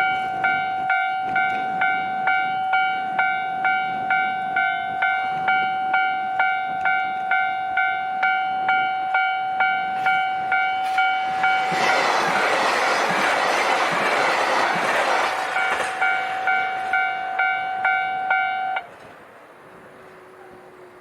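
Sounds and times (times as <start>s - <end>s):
level crossing warning bell: 0.0s - 11.6s, 16.0s - 18.9s
train passing: 0.0s - 21.0s.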